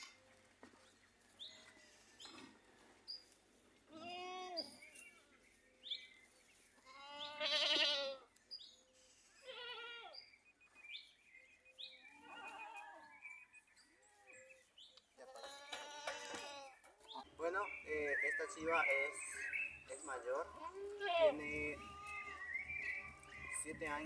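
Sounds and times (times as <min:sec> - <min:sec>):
goats bleating: 0:06.8 - 0:08.2, 0:09.4 - 0:10.2, 0:15.2 - 0:16.8, 0:17.8 - 0:24.0.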